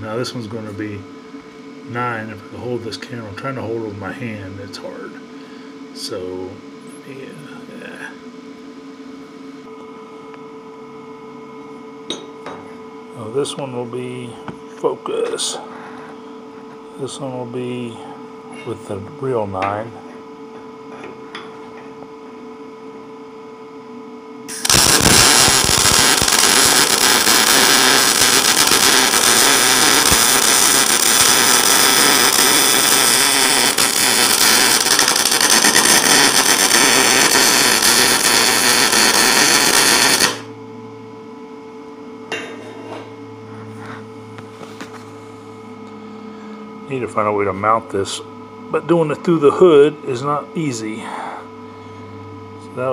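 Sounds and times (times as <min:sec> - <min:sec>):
low steady hum: 0:00.0 - 0:52.9
welding arc crackling: 0:24.5 - 0:40.5.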